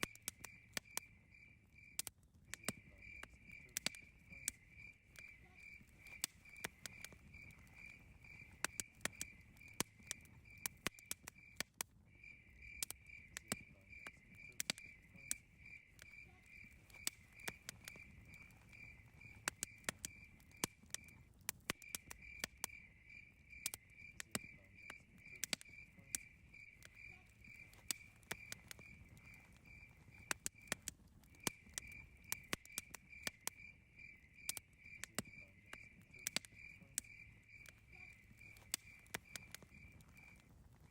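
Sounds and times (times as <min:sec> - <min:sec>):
campfire crackling and popping: 0:00.0 - 0:40.9
cricket chirping: 0:00.0 - 0:40.9.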